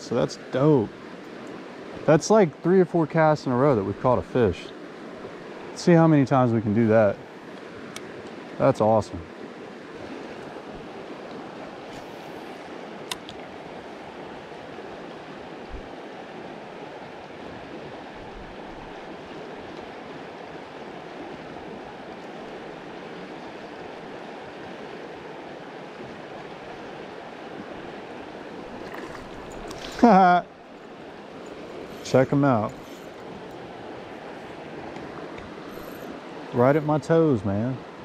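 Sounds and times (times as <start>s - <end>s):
fast river water rushing: 0.0s - 38.0s
sharp click: 13.1s - 13.4s.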